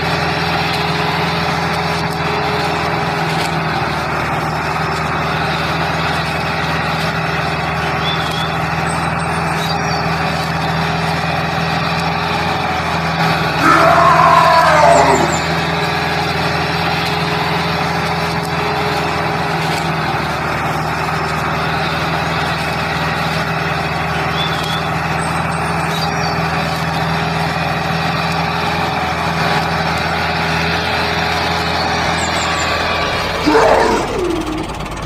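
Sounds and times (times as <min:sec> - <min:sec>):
vehicle engine drone: 0:00.0 - 0:35.0.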